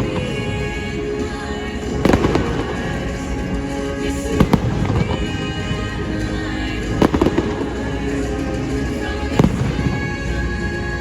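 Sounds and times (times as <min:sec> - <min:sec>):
soundtrack music: 0:00.0 - 0:11.0
fireworks bangs: 0:01.9 - 0:06.0, 0:06.8 - 0:10.9.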